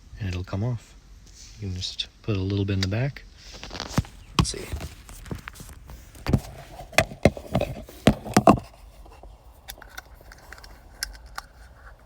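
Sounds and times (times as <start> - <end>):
screwdriver tapping hard plastic: 6.2 - 8.7.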